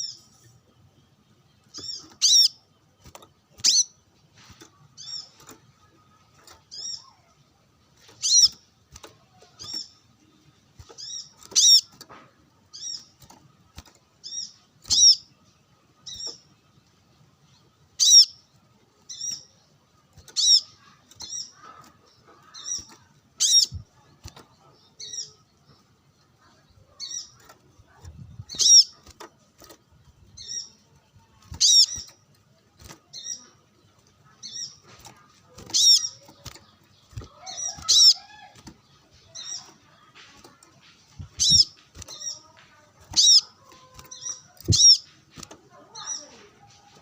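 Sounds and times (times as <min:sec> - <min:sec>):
bird chirping: 0:00.0 - 0:47.0.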